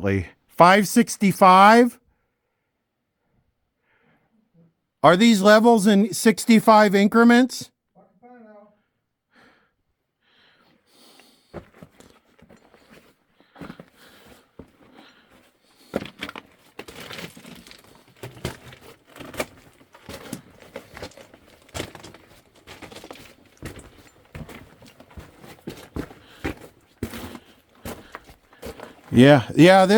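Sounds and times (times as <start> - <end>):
footsteps crunching on loose rock: 11.5 - 29.1.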